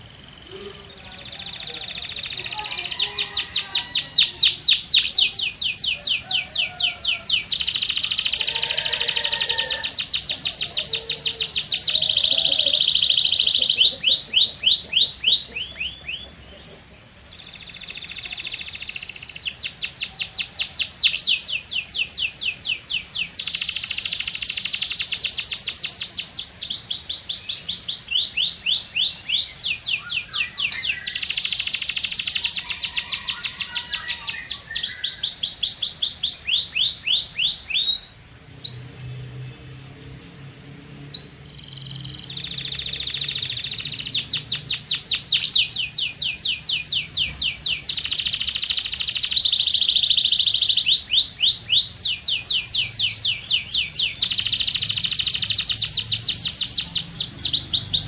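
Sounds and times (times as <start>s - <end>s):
canary singing trills: 0.0s - 58.0s.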